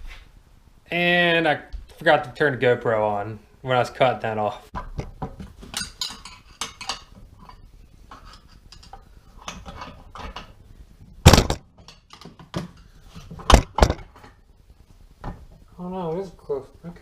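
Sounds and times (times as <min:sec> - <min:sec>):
loud metal clank: 0:11.2 - 0:11.7.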